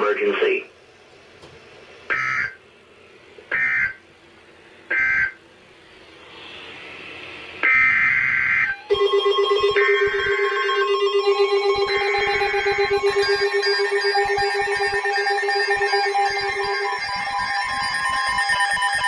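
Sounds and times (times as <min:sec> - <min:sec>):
screeching digital data bursts: 0:07.6 - 0:19.0.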